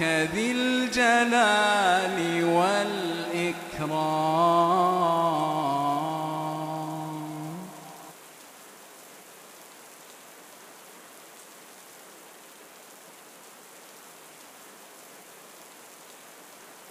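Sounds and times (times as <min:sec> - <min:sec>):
person reciting: 0:00.0 - 0:08.2
steady rain falling: 0:00.0 - 0:16.9.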